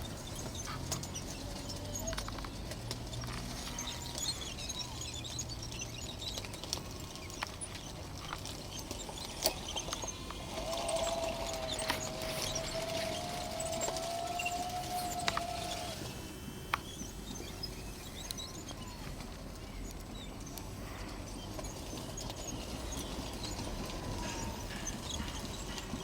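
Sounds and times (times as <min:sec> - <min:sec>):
outdoor background noise: 0:00.0 - 0:26.0
electric motor whine: 0:08.2 - 0:19.3.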